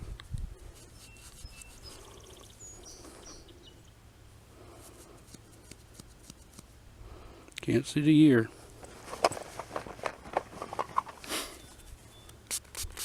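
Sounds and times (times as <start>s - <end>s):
faint songbird chirps: 0.8s - 4.1s, 11.5s - 12.5s.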